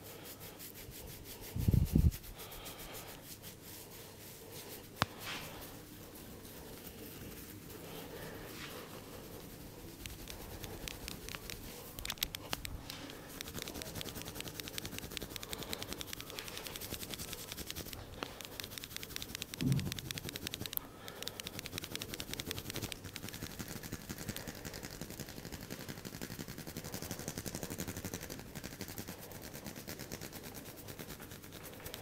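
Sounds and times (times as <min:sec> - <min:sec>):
rapid tapping of head massage: 0:00.0 - 0:32.0
low thump: 0:19.6 - 0:20.1.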